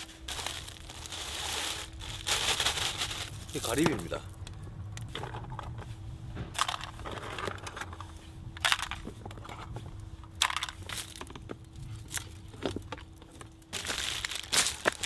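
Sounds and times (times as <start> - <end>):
low wind rumble: 0.2 - 10.4
shells clattering and crunching: 13.7 - 15.0.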